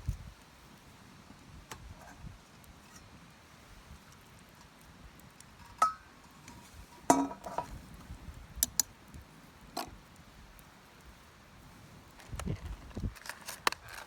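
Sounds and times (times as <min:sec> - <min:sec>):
metal cookware clinking: 0:05.6 - 0:07.7.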